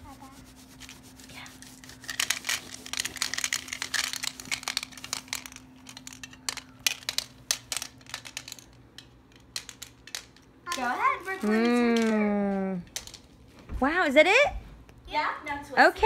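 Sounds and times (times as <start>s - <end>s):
gumballs clicking and clattering: 2.0s - 13.4s.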